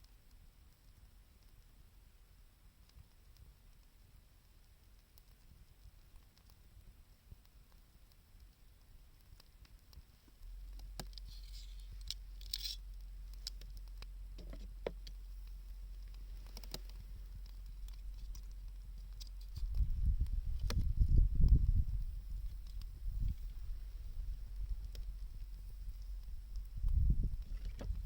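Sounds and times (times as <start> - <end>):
wood fire crackling: 0.0 - 28.0
wind rumbling on microphone: 13.2 - 28.0.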